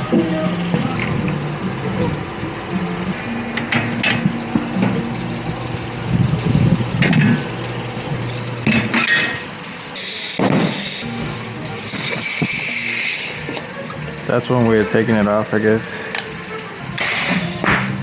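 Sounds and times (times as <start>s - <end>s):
low steady hum: 0.0s - 17.0s
loud air hiss: 8.2s - 8.7s, 9.5s - 14.1s, 17.0s - 17.6s.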